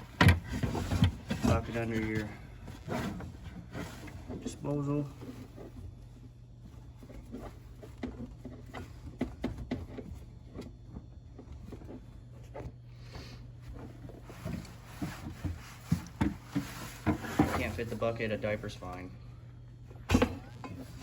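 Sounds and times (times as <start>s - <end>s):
clicks and knocks of pipes: 0.0s - 5.9s, 7.0s - 12.7s
steady low hum: 0.0s - 21.0s.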